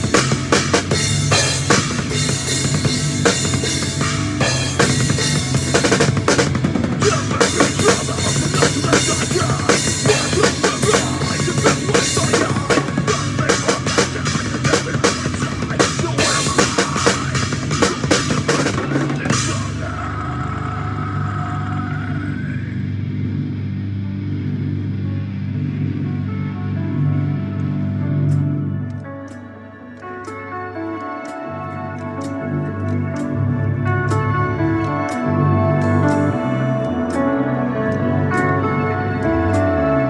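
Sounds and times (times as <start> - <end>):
drum kit played fast: 0.0 - 20.0.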